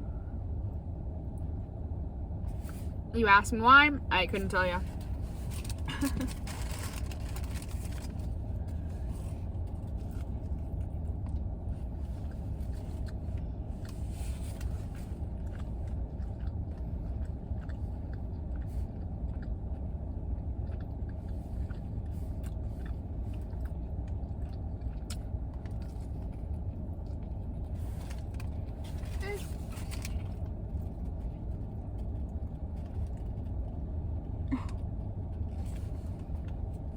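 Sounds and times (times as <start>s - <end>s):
car idling rumble: 0.0s - 36.9s
chewing crunchy sandwich: 4.9s - 36.9s.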